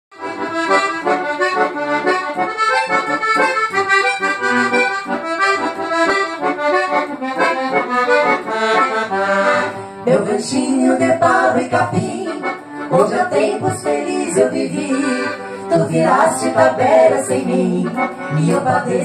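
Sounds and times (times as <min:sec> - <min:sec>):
accordion playing: 0:00.1 - 0:19.0.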